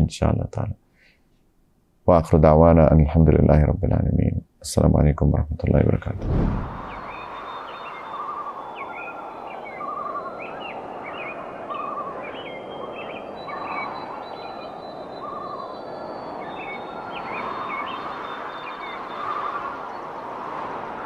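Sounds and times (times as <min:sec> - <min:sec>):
birds chirping and warbling: 0:06.0 - 0:20.6.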